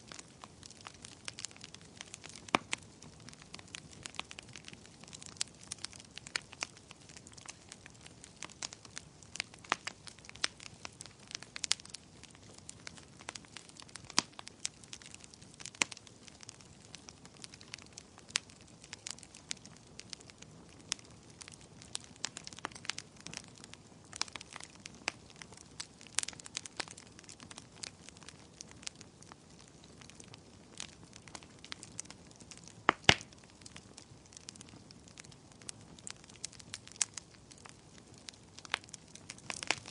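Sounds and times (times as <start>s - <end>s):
faint steady hiss: 0.0s - 39.9s
fire crackling and popping: 0.0s - 39.9s.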